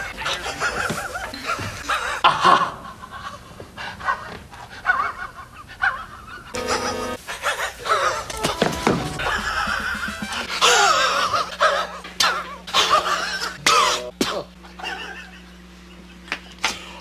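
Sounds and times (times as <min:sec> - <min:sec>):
background music: 0:06.6 - 0:07.2, 0:08.3 - 0:11.2.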